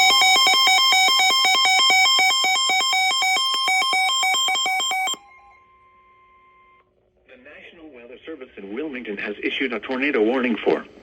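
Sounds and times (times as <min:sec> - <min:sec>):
electronic alarm warbling: 0:00.0 - 0:05.3
steady warning tone: 0:00.0 - 0:06.8.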